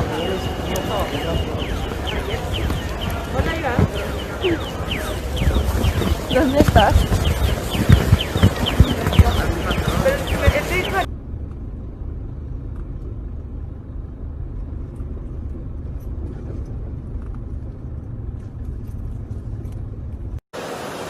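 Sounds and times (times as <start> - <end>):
faint scattered clicks: 0.0 - 11.1
low steady rumble: 0.0 - 20.4.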